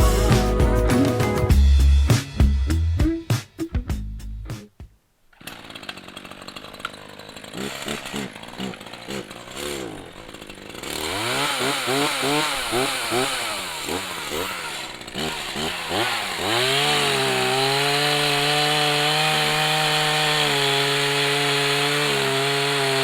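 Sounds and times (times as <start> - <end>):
two-stroke chainsaw revving: 5.4 - 23.0.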